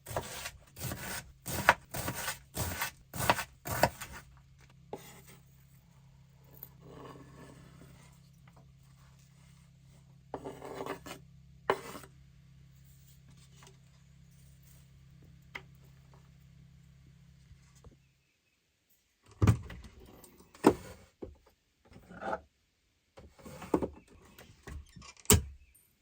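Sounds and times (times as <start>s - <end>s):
rubbing and scraping handling: 0.0s - 5.6s.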